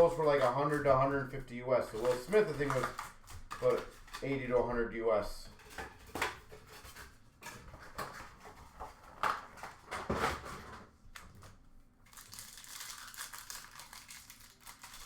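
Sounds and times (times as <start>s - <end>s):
packaging crinkling and tearing: 1.9s - 4.4s, 11.2s - 15.0s.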